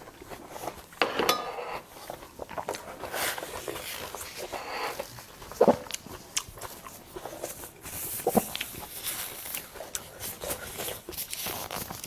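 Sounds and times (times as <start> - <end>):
chewing mouth clicks and smacks: 5.1 - 7.3.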